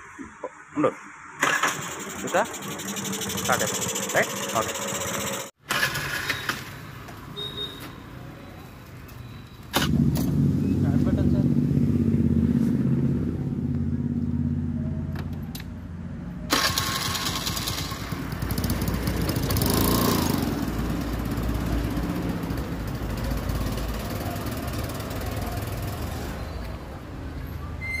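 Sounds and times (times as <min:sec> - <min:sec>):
scooter engine running: 0:01.4 - 0:06.2, 0:16.5 - 0:26.3.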